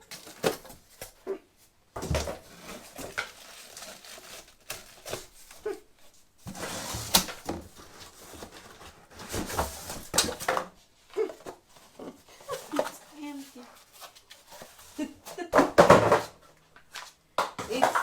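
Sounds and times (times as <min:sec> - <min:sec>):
packaging rustling: 0:02.2 - 0:05.6.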